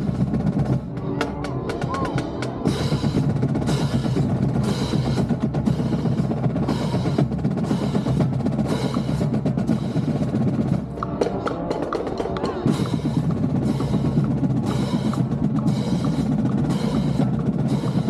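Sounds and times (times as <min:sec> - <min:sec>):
marching drumline playing: 0:00.0 - 0:18.0.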